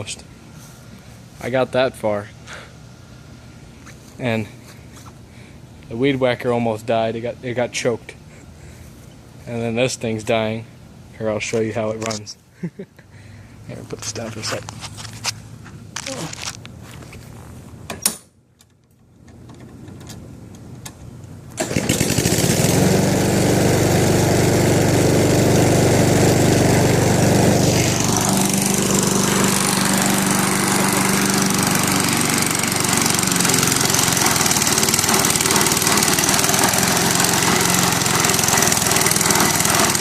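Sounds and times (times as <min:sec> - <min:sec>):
person talking: 0:13.7 - 0:14.7, 0:16.0 - 0:16.4
lawnmower engine running: 0:21.4 - 0:40.0.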